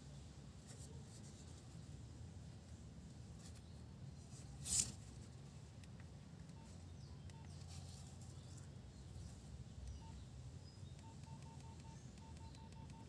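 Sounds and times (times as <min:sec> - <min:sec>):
low steady hum: 0:00.0 - 0:13.0
rustling scrape: 0:04.2 - 0:05.4
faint clicks: 0:05.7 - 0:07.7, 0:10.8 - 0:13.0.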